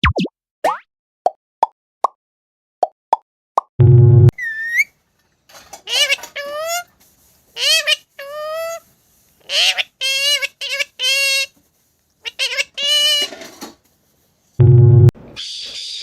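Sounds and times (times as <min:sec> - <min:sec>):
parrot-like squawking calls: 0:07.6 - 0:08.8, 0:09.4 - 0:11.5, 0:12.2 - 0:13.4.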